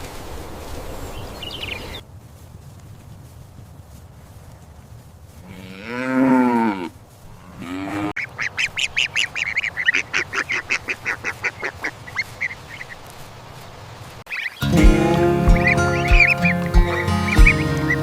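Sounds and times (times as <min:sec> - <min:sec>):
geese honking: 0:14.6 - 0:18.0.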